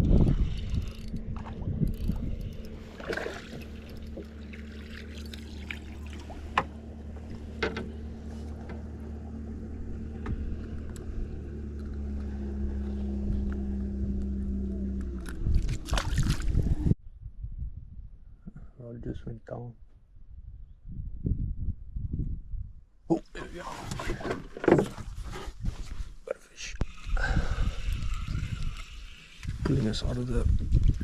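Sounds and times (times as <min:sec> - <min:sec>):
motor humming: 0:00.0 - 0:16.9.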